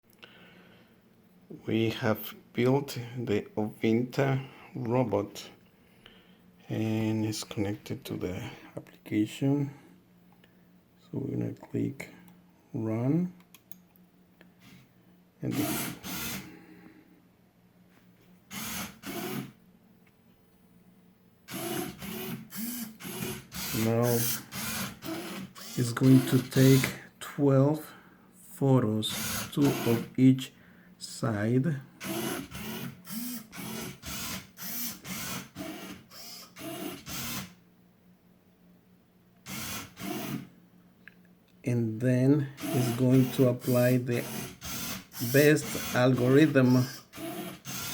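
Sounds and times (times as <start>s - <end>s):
faint steady hum: 0.0s - 47.9s
servo motors whirring: 21.5s - 26.9s, 29.1s - 30.1s, 32.0s - 37.5s, 42.6s - 47.9s.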